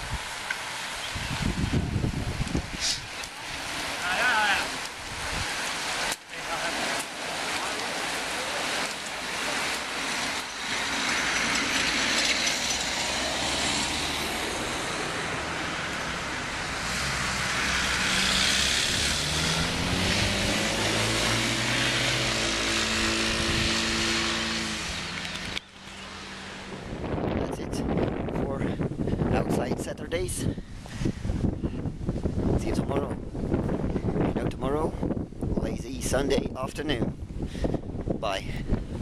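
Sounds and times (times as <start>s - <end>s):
vehicles passing on road: 0.0s - 36.4s, 37.0s - 39.0s
outdoor noise: 0.0s - 39.0s
engine note rising in pitch: 16.8s - 25.2s.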